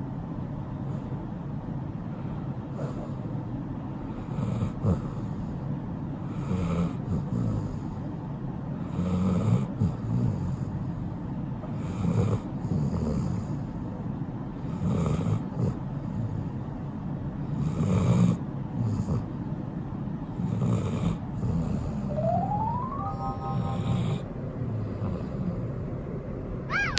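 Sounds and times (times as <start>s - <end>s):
dog snoring: 2.7s - 3.3s, 4.1s - 5.6s, 6.2s - 8.0s, 8.8s - 11.0s, 11.7s - 13.9s, 14.6s - 16.6s, 17.4s - 19.4s, 20.3s - 22.1s, 24.8s - 25.7s.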